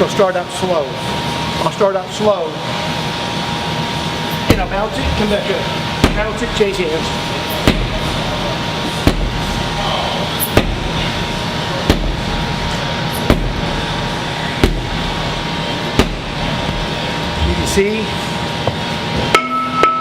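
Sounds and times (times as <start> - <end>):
steady background hum: 0.0 - 20.0
sledgehammer striking a tire: 4.5 - 4.9, 6.0 - 6.5, 7.6 - 8.2, 9.0 - 9.6, 10.4 - 11.1, 11.8 - 12.6, 13.2 - 16.9.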